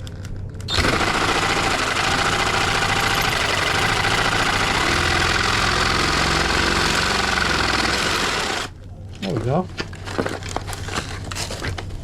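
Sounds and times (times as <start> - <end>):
reciprocating saw cutting metal: 0.7 - 8.7.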